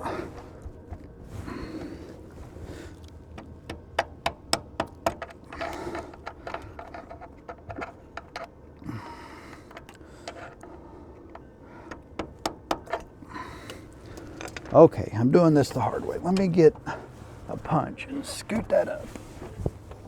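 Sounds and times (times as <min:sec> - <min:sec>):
hand tools clicking on steel: 0:03.3 - 0:14.8.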